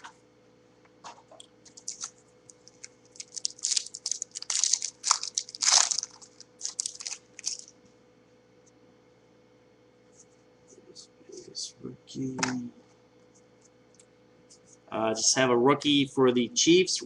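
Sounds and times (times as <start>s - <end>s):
wrapper crinkling and tearing: 1.7s - 7.7s.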